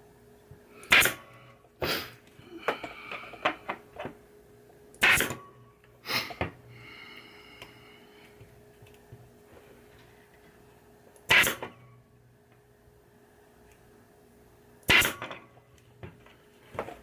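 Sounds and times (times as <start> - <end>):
pneumatic staple gun shot: 0.8 - 1.3, 5.0 - 5.4, 11.3 - 11.8, 14.8 - 15.4.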